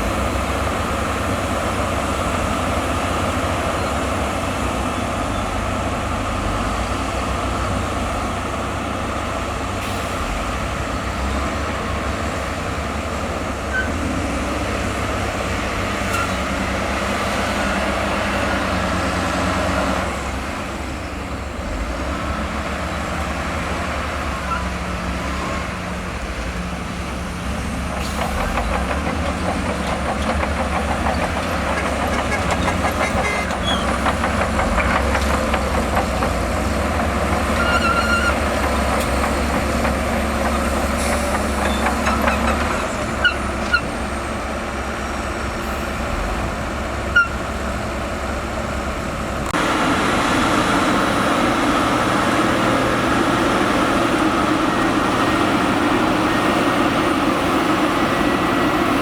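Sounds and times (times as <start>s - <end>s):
bulldozer diesel engine running: 0.0s - 59.0s
short squeaks: 28.0s - 35.2s, 37.3s - 39.6s, 40.4s - 44.0s.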